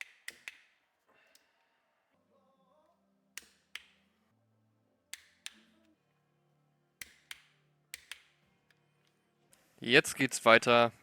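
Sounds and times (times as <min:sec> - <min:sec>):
sharp clicks in pairs: 0:00.0 - 0:01.5, 0:03.4 - 0:04.0, 0:05.2 - 0:05.7, 0:07.0 - 0:08.4
faint background music: 0:00.0 - 0:11.0.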